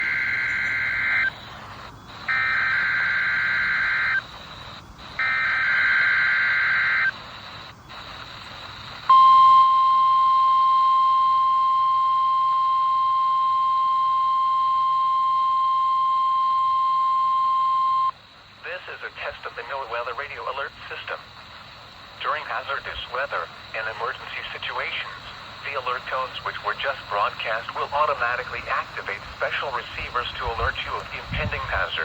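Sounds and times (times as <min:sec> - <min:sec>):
warbling digital data tones: 0:00.0 - 0:13.2
steady warning alarm tone: 0:00.0 - 0:21.4.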